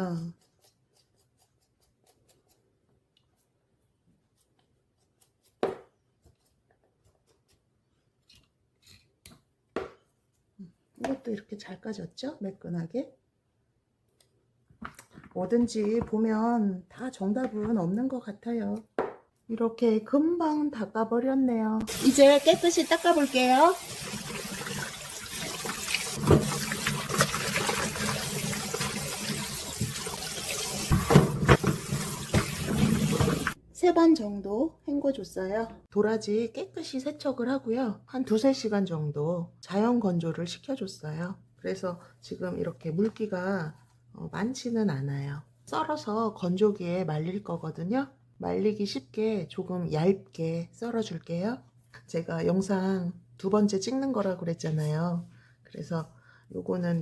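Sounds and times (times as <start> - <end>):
knife scraping root skin: 0.2 - 3.5, 4.3 - 5.6
water running and splashing: 21.9 - 33.6.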